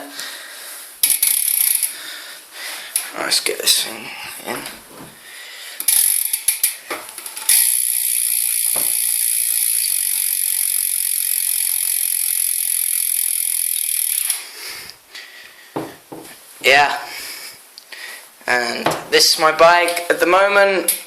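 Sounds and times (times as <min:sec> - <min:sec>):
bike hub ratchet clicks: 0:01.0 - 0:02.0, 0:05.8 - 0:14.5
freewheel pawls buzzing: 0:07.5 - 0:14.4.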